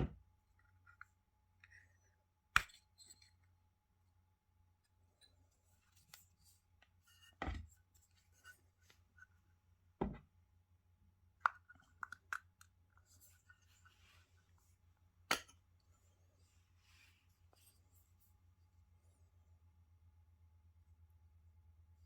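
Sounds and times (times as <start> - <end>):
faint steady hum: 0.0 - 22.0.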